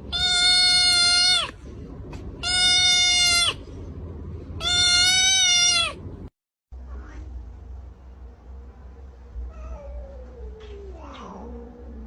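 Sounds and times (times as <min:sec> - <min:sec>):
animal high-pitched calls: 0:02.4 - 0:03.6, 0:04.6 - 0:06.0.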